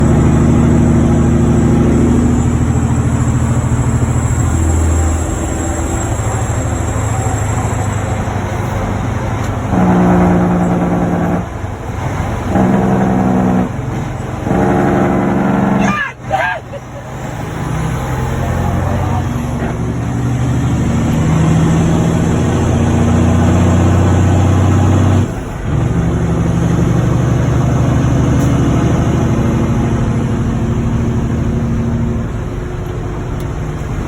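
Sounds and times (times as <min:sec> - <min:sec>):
truck diesel engines droning: 0:00.0 - 0:34.0
truck horn blasts: 0:04.1 - 0:16.7.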